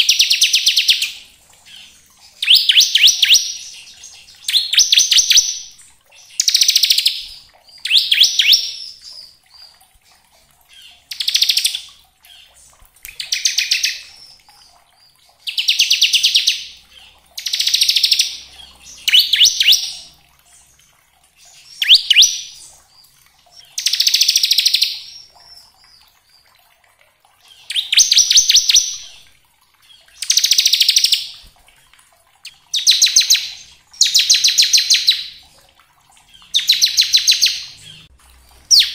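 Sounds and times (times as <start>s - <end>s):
bird singing rattling trills: 0.0s - 26.1s, 27.4s - 29.2s, 36.2s - 38.1s.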